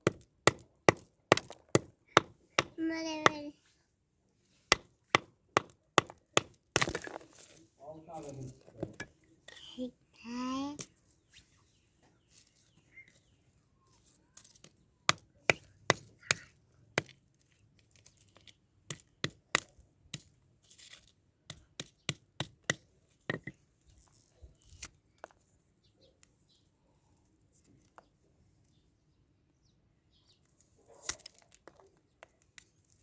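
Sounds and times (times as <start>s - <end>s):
sharp knocks and cracks: 0.0s - 3.4s, 4.7s - 7.5s, 18.0s - 20.4s.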